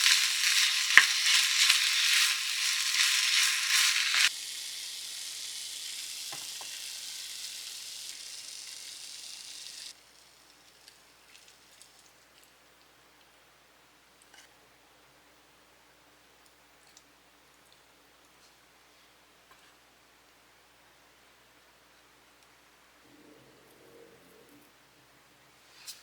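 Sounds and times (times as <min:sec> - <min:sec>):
food sizzling in a frying pan: 0:00.0 - 0:11.9.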